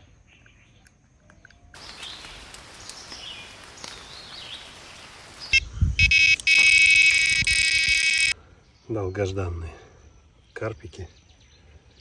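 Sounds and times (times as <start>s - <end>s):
birds chirping: 1.8s - 12.0s
bite alarm continuous high beep: 5.5s - 8.4s.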